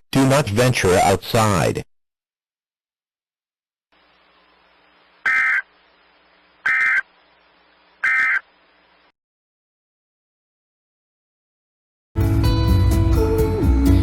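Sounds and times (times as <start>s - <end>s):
faint hiss: 3.9s - 9.1s
faint hum: 3.9s - 9.1s.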